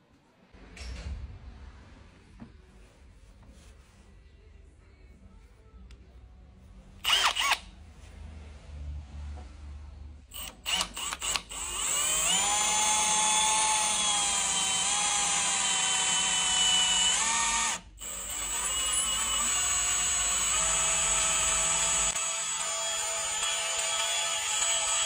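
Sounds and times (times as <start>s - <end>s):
drill clicks: 7.0s - 7.6s, 10.3s - 25.0s
power drill motor whining: 7.0s - 7.6s, 10.3s - 25.0s.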